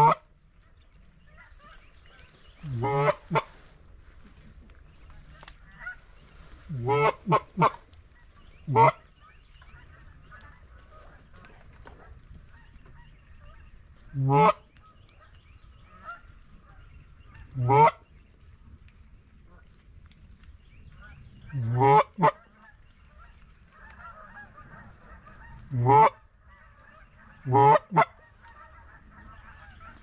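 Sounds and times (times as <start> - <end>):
distant goose flock chatter: 0.0 - 18.7, 20.8 - 30.0
goose honks: 2.6 - 3.5, 6.7 - 7.8, 8.7 - 9.0, 21.5 - 30.0.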